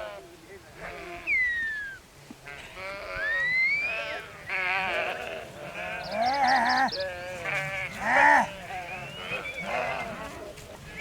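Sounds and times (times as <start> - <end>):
thin whistle-like call: 1.2 - 2.0, 3.2 - 4.0, 8.8 - 9.8
sheep bleating: 2.5 - 11.0.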